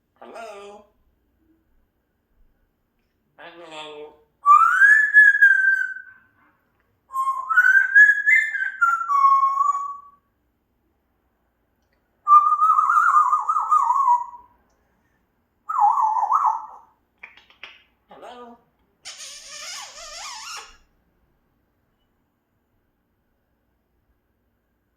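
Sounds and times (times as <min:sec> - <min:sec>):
parrot whistling: 0:04.4 - 0:06.2, 0:07.1 - 0:10.2, 0:12.2 - 0:14.5, 0:19.1 - 0:20.8.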